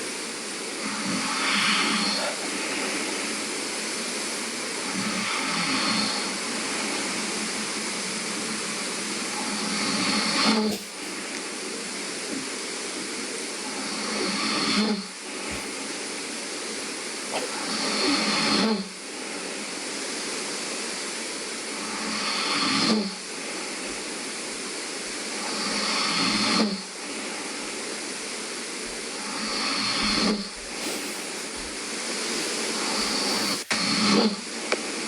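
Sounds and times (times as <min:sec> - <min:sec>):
background hiss: 0:00.0 - 0:35.0
man snoring: 0:00.8 - 0:03.4, 0:04.8 - 0:06.4, 0:09.2 - 0:11.4, 0:13.4 - 0:16.0, 0:29.2 - 0:34.4.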